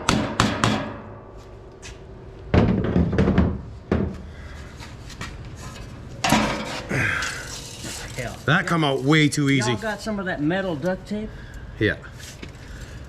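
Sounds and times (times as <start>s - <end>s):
hammer knocking on metal exhaust: 0.0s - 1.5s.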